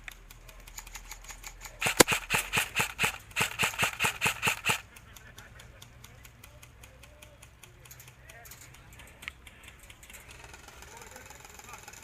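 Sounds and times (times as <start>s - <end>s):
airsoft rifle shots: 1.4s - 4.9s.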